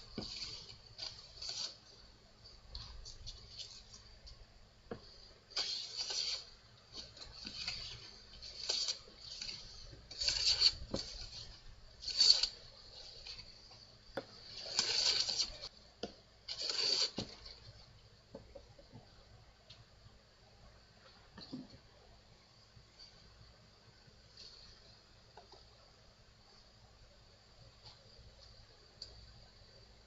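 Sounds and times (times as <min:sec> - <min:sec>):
hand plane shaving wood: 0:05.6 - 0:12.6, 0:16.5 - 0:17.4.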